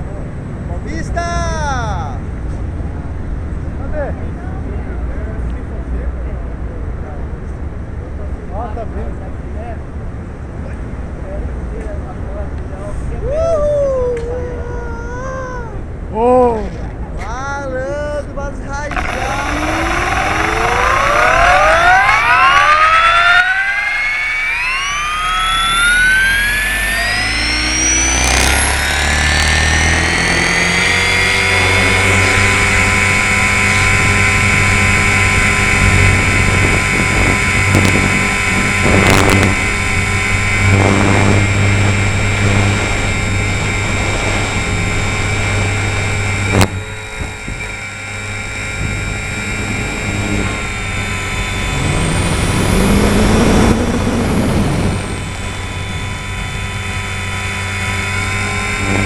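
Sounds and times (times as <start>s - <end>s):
helicopter motor and rotor whine: 18.5s - 59.0s
sharp click: 46.5s - 46.8s.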